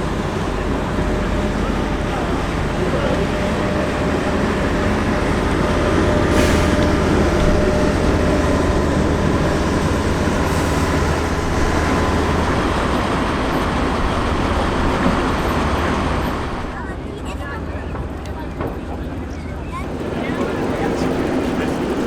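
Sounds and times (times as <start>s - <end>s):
diesel engine running: 0.0s - 16.8s.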